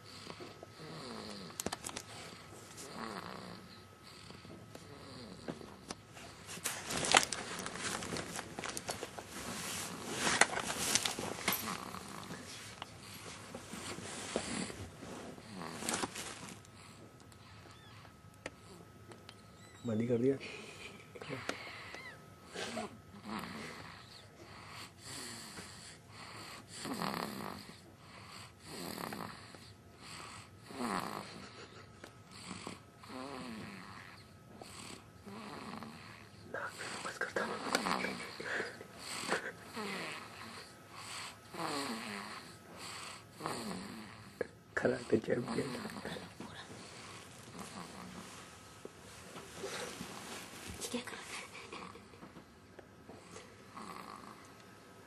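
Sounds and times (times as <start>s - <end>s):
snoring with hissy breaths: 0.0s - 6.5s, 11.5s - 17.7s, 21.3s - 31.5s, 32.3s - 48.3s, 53.1s - 54.5s
person snoring: 0.8s - 1.6s, 35.3s - 48.2s.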